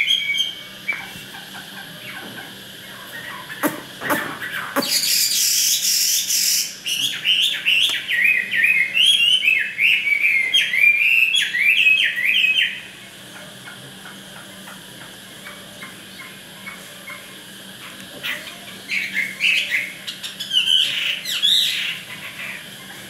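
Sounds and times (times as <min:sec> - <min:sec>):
bird singing loud slurred whistles: 0:00.0 - 0:01.0, 0:03.2 - 0:12.9, 0:18.9 - 0:22.0.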